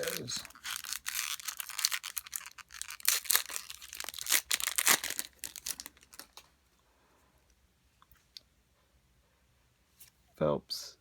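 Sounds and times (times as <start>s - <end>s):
card pack wrapper crinkling and tearing: 0.0s - 6.5s.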